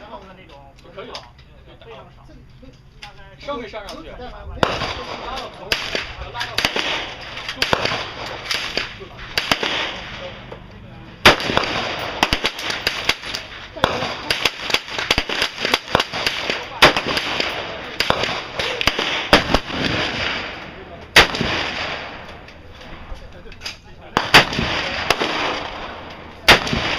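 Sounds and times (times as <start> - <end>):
loud gunshots with ringing: 4.6 - 10.5, 11.2 - 22.3, 24.2 - 26.9
gunshots on a shooting range: 4.6 - 23.2, 24.1 - 26.9.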